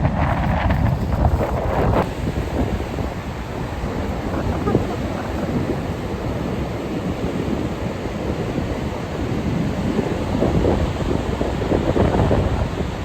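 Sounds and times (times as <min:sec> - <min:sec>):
waves breaking: 0:00.0 - 0:13.0
wind rumbling on microphone: 0:00.0 - 0:13.0.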